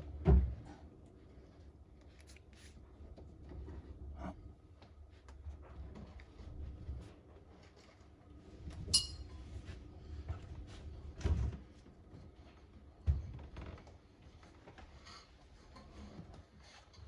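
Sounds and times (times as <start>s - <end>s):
metallic clink: 9.0s - 9.3s.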